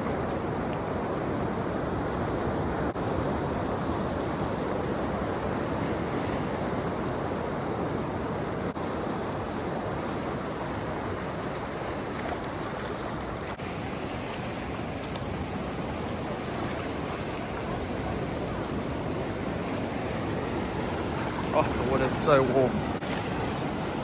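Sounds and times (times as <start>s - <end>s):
waves washing along shore: 0.0s - 24.0s.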